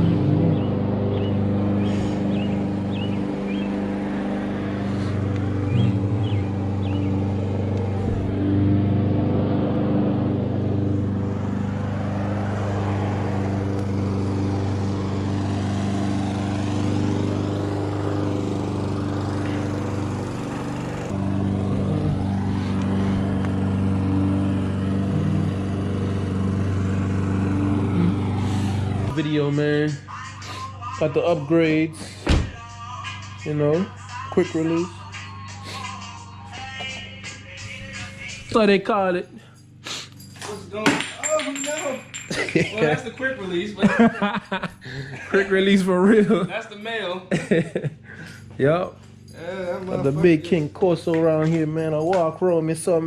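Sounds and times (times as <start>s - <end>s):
car engine idling: 0.0s - 8.4s.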